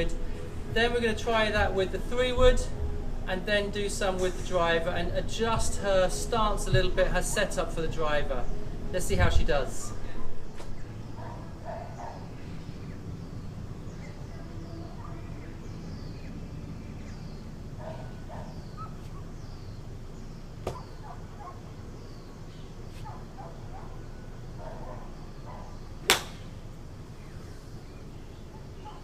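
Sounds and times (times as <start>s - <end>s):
golf club striking ball: 26.0s - 26.6s.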